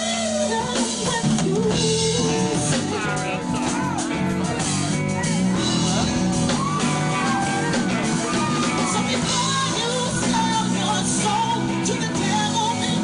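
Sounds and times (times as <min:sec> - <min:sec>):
live band with singer: 0:00.0 - 0:13.0
crowd shouting: 0:02.8 - 0:10.8.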